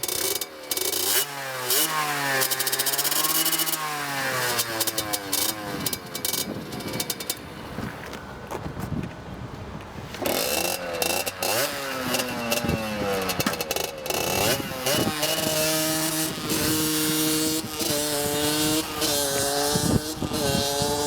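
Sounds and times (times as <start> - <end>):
two-stroke engine revving: 0.0 - 7.5, 10.2 - 21.0.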